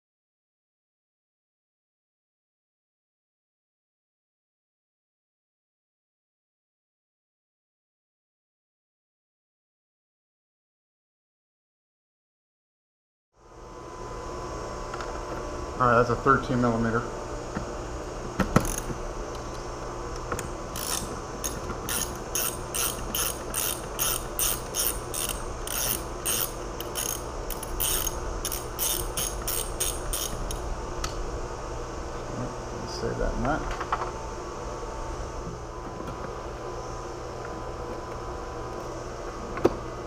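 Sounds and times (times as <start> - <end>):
background hum and hiss: 13.4 - 40.0
socket ratchet clicking: 18.6 - 18.9, 20.4 - 30.6.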